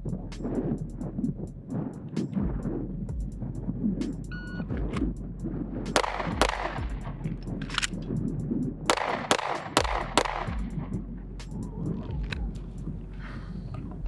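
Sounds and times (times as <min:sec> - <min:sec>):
pistol shots: 0:06.0 - 0:07.0, 0:08.9 - 0:10.6.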